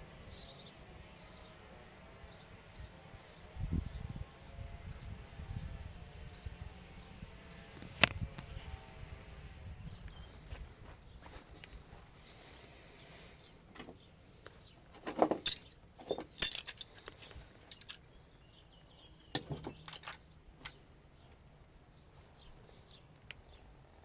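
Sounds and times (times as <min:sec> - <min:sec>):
metal tools clinking: 0:15.0 - 0:18.0, 0:19.4 - 0:20.8.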